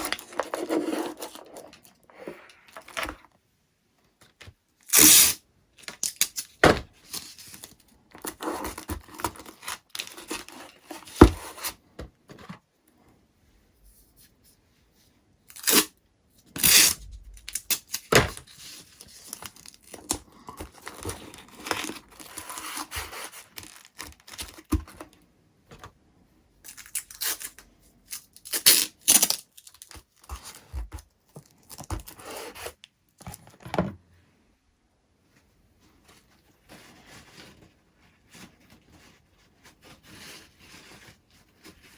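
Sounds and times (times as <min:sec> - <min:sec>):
masking tape ripping: 0:04.9 - 0:05.4.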